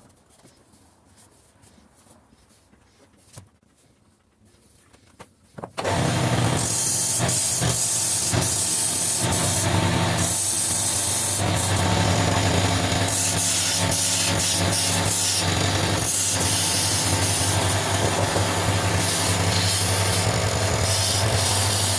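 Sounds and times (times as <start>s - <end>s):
chisel cutting spinning wood: 5.8s - 21.9s
wood lathe motor hum: 5.8s - 21.9s.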